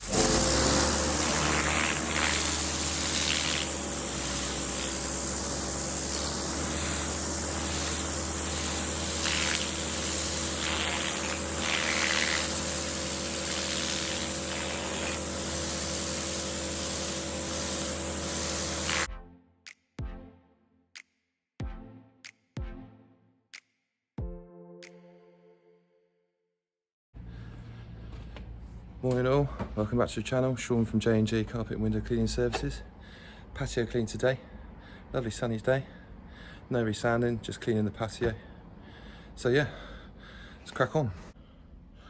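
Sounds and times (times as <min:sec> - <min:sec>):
pressure washer water jet hiss: 0:00.0 - 0:19.1
pump motor hum: 0:00.0 - 0:19.1.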